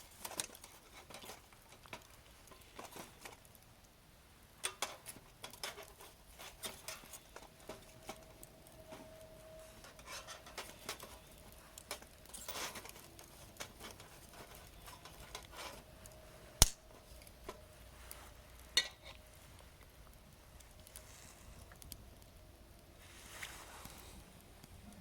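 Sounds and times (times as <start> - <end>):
campfire crackling: 0.0 - 25.0
sharp loud fire pop: 16.6 - 16.8.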